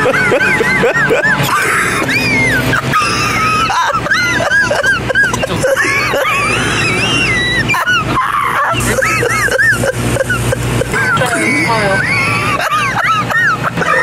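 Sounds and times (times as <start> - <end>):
steady musical hum: 0.0 - 14.0
high-pitched wheezing squeals: 0.5 - 12.5.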